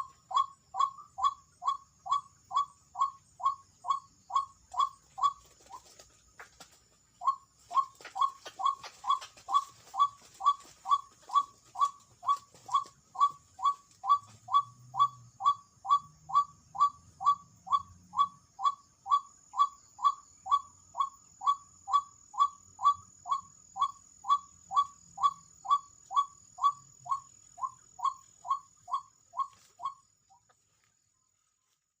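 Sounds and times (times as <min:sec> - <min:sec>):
waterhen calls: 0:00.0 - 0:05.9, 0:07.2 - 0:30.0.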